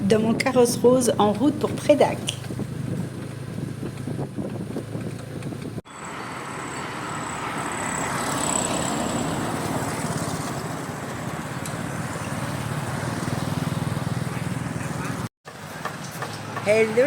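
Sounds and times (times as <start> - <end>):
wind noise: 0.0 - 5.8
road noise: 0.0 - 17.0
small engine running: 1.3 - 16.6.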